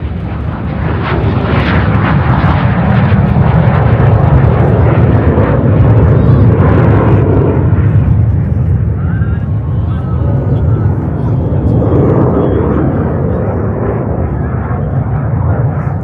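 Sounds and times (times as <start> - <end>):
jet engine rumble: 0.0 - 16.0.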